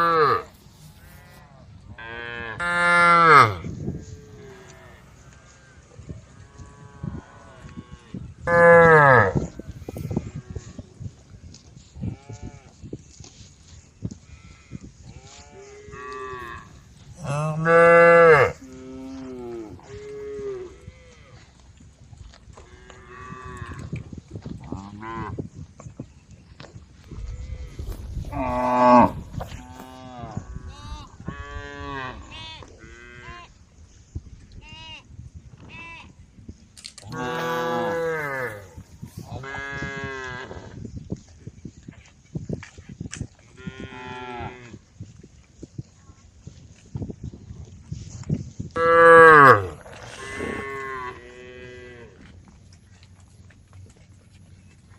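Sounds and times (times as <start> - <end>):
cows mooing: 0.0 - 5.8, 6.4 - 10.7, 15.2 - 21.3, 27.4 - 30.7, 37.1 - 38.8, 48.8 - 52.2.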